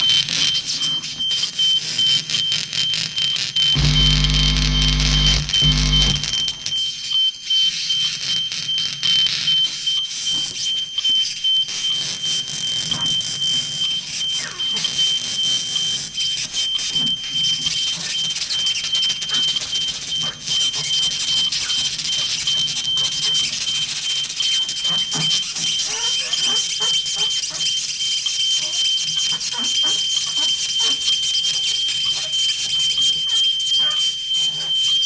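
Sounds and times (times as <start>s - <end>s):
high electronic tone: 3.8s - 6.6s.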